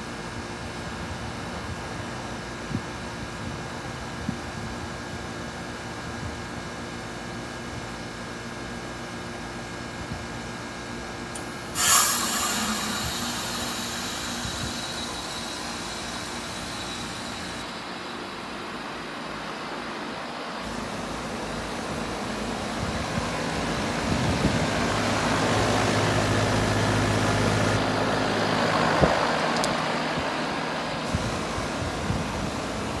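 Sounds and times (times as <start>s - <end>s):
heat pump humming: 11.2s - 33.0s
whoosh of refrigerant: 11.4s - 17.8s
refrigerant hiss: 11.4s - 18.4s, 20.6s - 33.0s.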